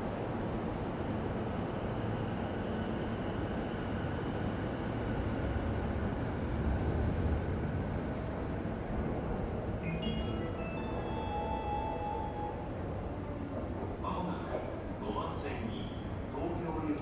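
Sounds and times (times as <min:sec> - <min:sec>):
train rumbling on tracks: 0:00.0 - 0:17.0.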